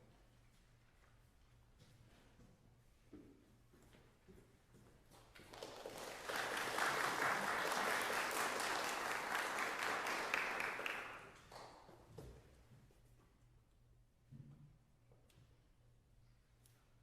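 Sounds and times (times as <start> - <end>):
audience applauding: 5.5 - 11.7.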